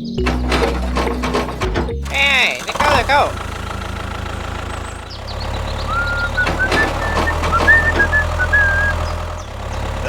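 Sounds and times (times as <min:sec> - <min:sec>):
tractor engine rumbling: 0:00.0 - 0:10.0
clicks: 0:00.2 - 0:03.4, 0:06.0 - 0:08.8.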